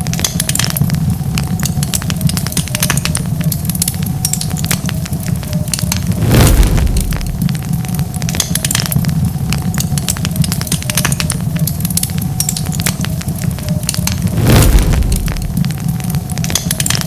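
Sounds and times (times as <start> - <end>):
wood fire crackling: 0.0 - 17.0
loud rush of sound: 6.0 - 7.7, 14.1 - 15.9.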